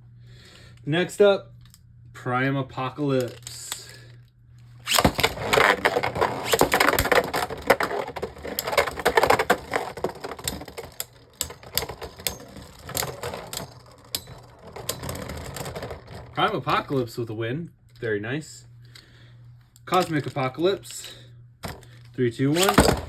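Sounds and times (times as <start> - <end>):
spinning tops clattering: 4.9 - 16.4.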